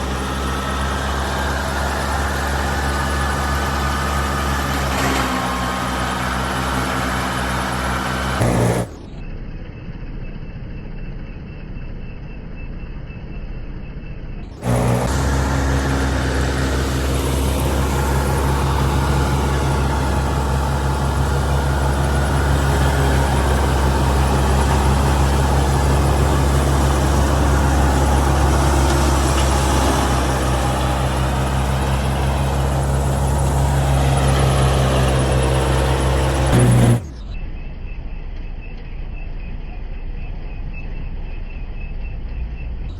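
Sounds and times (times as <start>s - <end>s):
diesel engine humming: 0.0s - 12.4s, 14.4s - 42.9s
mechanical clatter of machinery: 36.4s - 39.8s.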